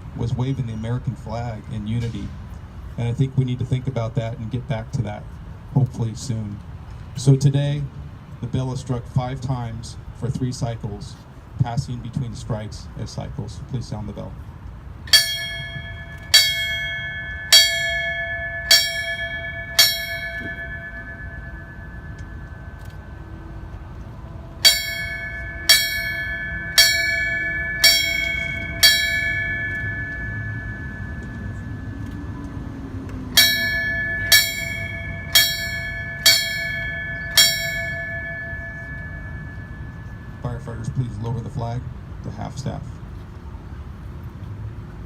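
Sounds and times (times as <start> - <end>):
memorial bell ringing: 14.9 - 42.8.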